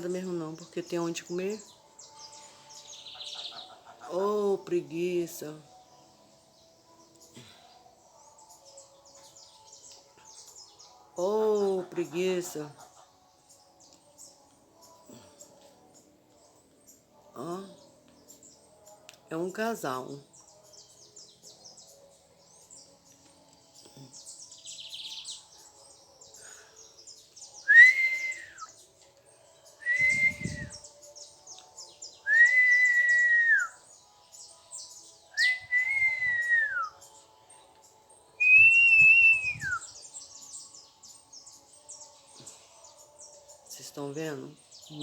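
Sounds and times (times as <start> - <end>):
faint high chirping: 23.1 - 33.8
bird whistling notes: 27.7 - 28.7, 29.8 - 30.8, 35.4 - 37.0, 38.4 - 39.9.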